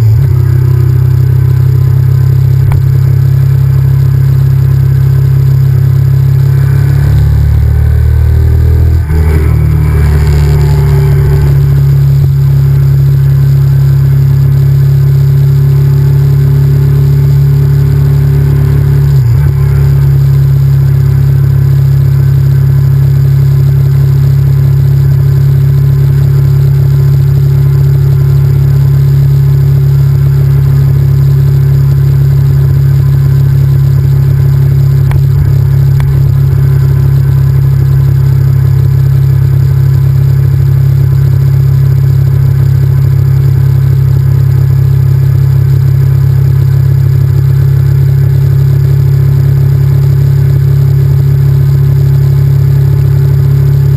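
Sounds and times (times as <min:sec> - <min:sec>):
motorcycle engine running steady: 0:00.0 - 0:53.9.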